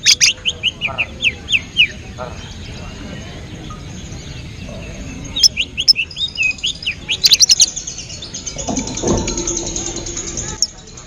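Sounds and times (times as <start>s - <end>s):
bird chirping: 0.0s - 11.0s.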